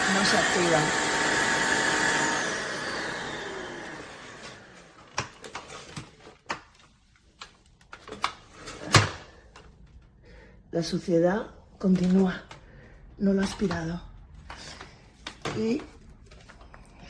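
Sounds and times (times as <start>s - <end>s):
vacuum motor winding down: 0.0s - 5.2s.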